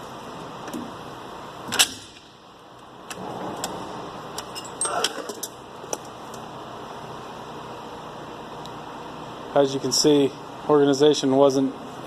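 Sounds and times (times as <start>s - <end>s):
tool chest drawers opening and shutting: 4.4s - 5.6s.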